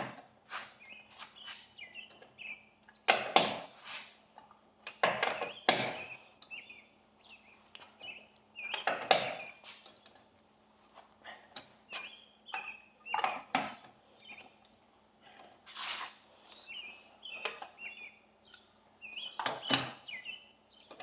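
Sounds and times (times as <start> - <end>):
lug wrench scraping: 15.3 - 16.4.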